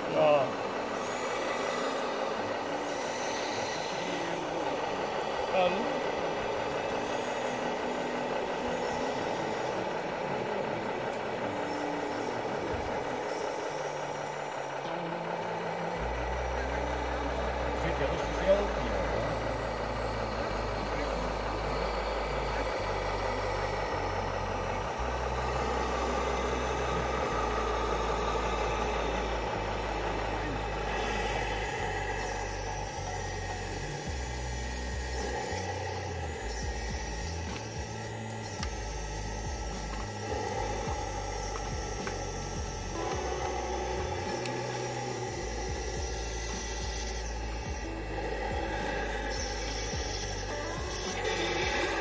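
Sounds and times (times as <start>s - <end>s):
model trucks droning: 0.0s - 52.0s
small motors and gears whirring: 0.0s - 52.0s
steady tones: 0.0s - 52.0s.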